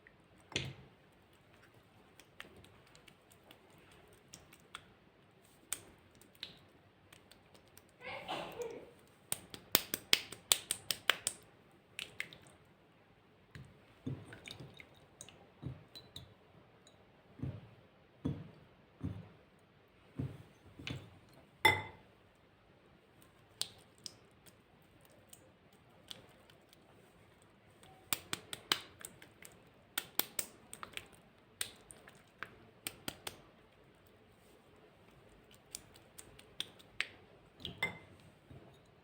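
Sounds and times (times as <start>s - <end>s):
slime clicking and popping: 5.6s - 8.0s, 9.3s - 12.5s, 28.0s - 33.4s, 35.5s - 37.8s.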